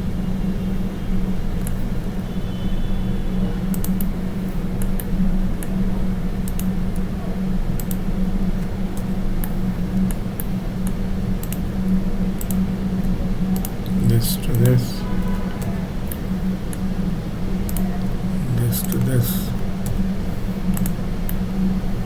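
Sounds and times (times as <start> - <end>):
computer mouse clicks: 3.7 - 4.1, 4.8 - 5.7, 6.4 - 7.1, 7.8 - 8.1, 9.0 - 11.7, 12.4 - 12.6, 20.7 - 21.4
steady low hum: 9.5 - 22.0.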